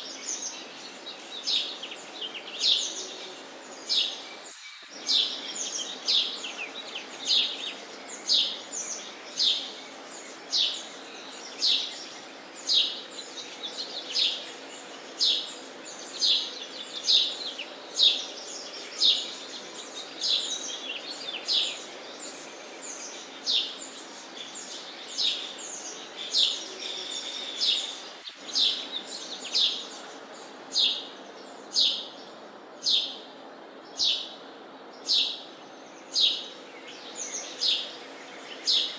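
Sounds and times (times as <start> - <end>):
steady background hiss: 0.0 - 38.9
sparrow chirping: 22.3 - 32.2, 34.0 - 34.4, 35.0 - 38.0.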